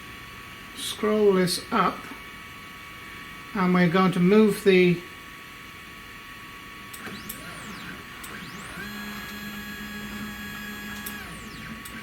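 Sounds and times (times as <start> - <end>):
stepper motors whining: 6.9 - 12.0.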